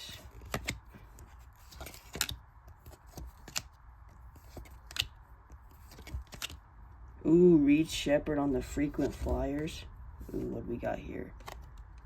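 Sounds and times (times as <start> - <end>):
cards sliding and rustling: 0.2 - 6.6, 8.6 - 10.6.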